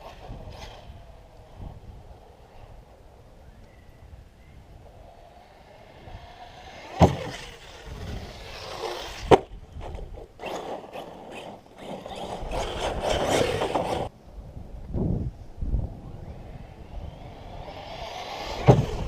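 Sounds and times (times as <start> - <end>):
toy truck hard landings: 5.1 - 14.1, 16.6 - 19.0
tyres scraping over gravel: 6.2 - 14.1.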